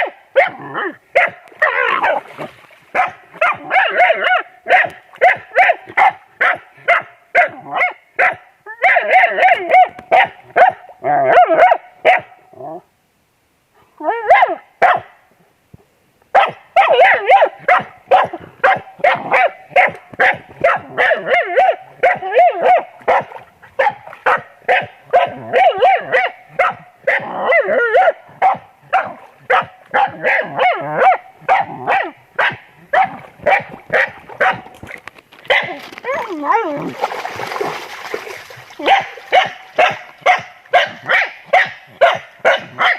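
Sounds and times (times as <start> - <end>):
dogs barking excitedly: 0.0 - 2.3, 2.9 - 12.4, 14.3 - 15.1, 16.3 - 34.7, 35.4 - 37.0, 38.8 - 42.9.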